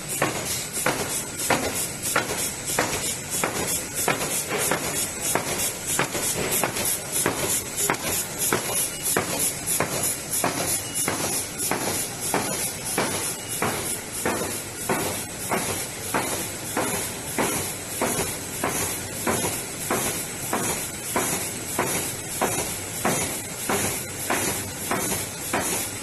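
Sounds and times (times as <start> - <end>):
machine hissing: 0.0 - 26.0
machine knocking: 0.0 - 26.0.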